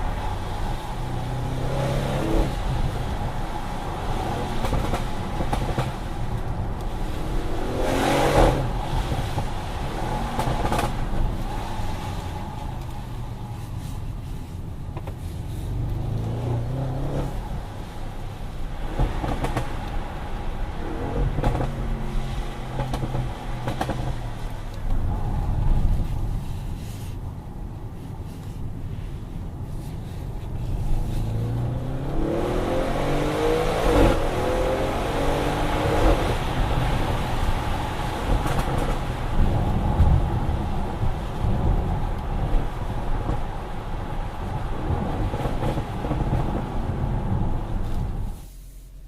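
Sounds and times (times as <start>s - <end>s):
car engine accelerating: 15.5s - 26.1s, 30.6s - 41.7s.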